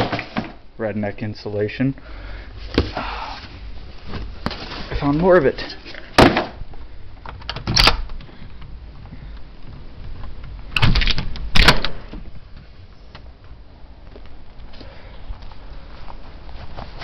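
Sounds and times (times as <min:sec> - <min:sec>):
rustling: 0:02.5 - 0:17.0.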